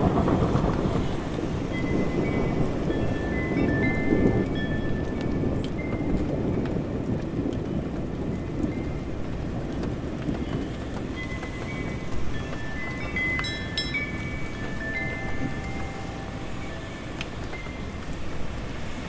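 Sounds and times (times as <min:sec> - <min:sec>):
low rolling thunder: 0:00.0 - 0:12.8, 0:14.0 - 0:19.0
steady rain: 0:00.0 - 0:19.0.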